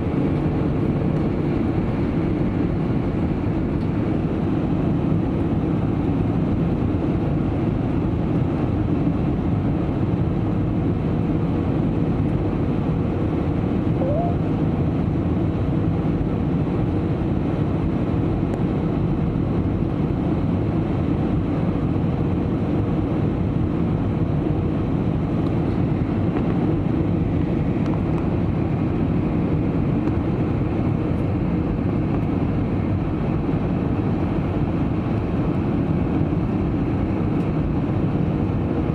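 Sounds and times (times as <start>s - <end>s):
airliner cabin roar: 13.6s - 15.7s.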